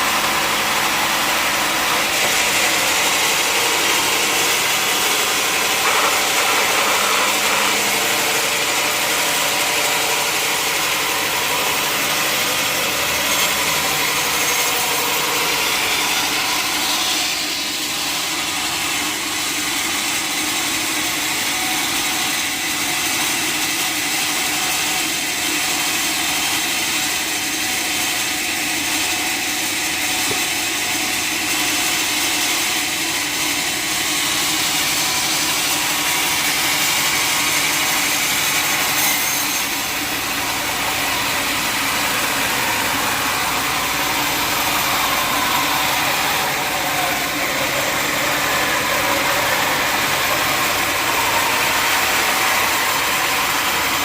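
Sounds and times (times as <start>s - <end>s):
sawmill machinery hum and hiss: 0.0s - 54.0s.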